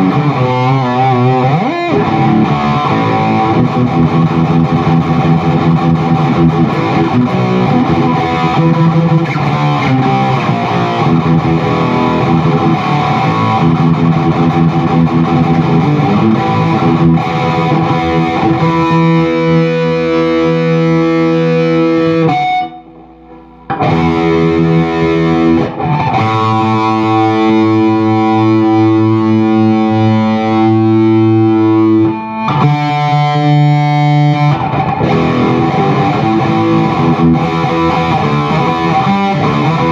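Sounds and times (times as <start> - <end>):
distorted electric guitar: 0.0 - 39.9.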